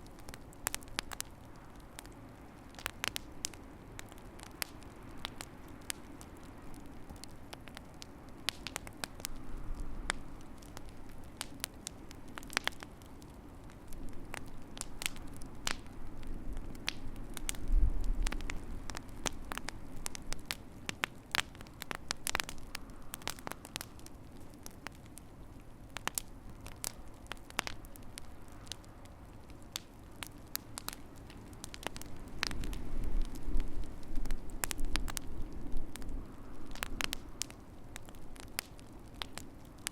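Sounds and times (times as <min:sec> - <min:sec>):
wood fire crackling: 0:00.0 - 0:39.9.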